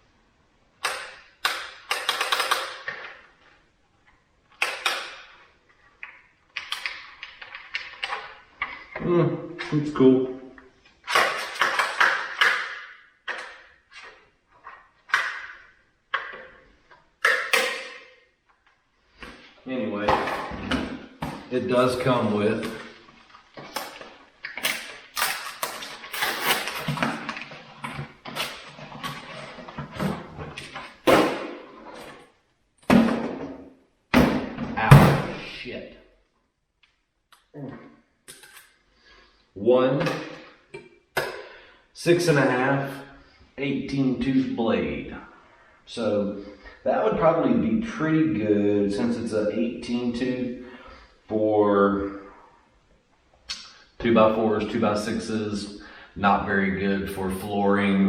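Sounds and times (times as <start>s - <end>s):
items rustling and knocking: 10.6s - 35.4s.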